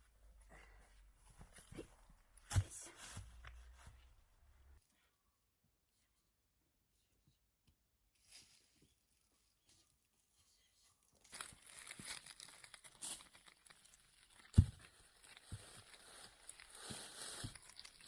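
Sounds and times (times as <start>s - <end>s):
faint rustling and crinkling: 8.1s - 18.0s.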